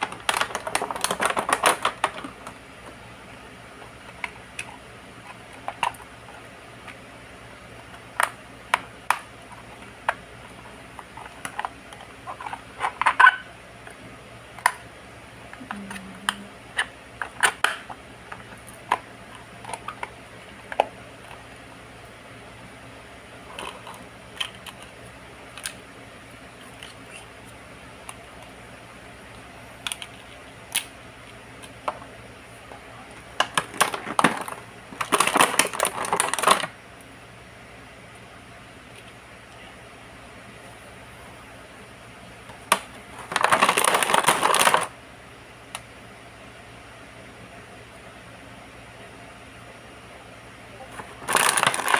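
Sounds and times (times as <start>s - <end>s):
toy pieces clattering and rustling: 0.0s - 2.3s, 51.0s - 51.9s.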